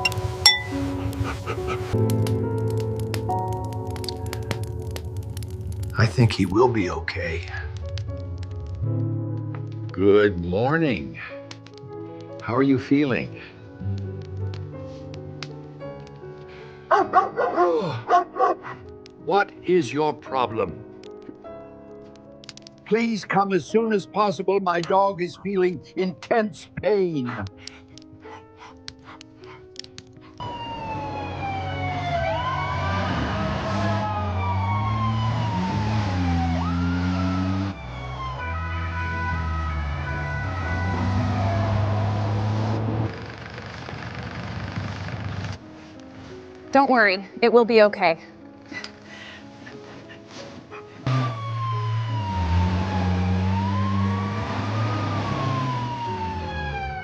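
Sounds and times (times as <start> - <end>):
vehicle engine rumble: 0.0 - 10.0, 30.4 - 45.5, 51.0 - 57.0
ambulance siren wailing: 30.4 - 43.1, 51.1 - 57.0.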